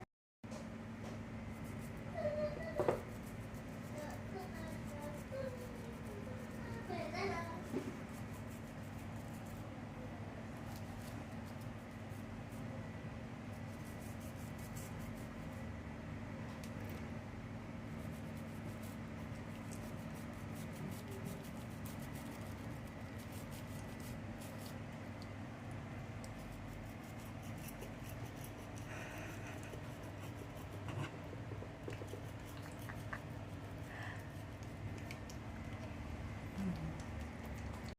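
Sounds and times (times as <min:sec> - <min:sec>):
steady low hum: 0:00.5 - 0:37.9
toothbrush scrubbing teeth: 0:01.5 - 0:09.6, 0:13.6 - 0:15.6, 0:17.9 - 0:25.2, 0:26.1 - 0:37.9.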